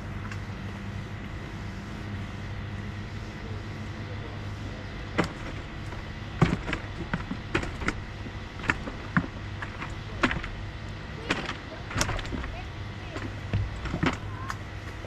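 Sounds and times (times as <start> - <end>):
low steady hum: 0.0 - 15.0
knocks and clicks: 5.2 - 10.6, 11.2 - 14.6.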